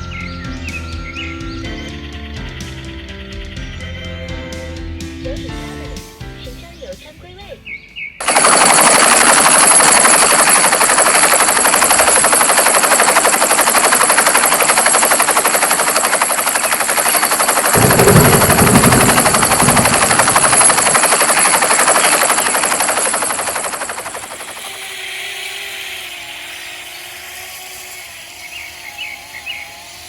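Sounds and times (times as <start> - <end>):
toy helicopter motor rattle and whine: 8.2 - 30.0
deeper thrumming: 17.4 - 24.4.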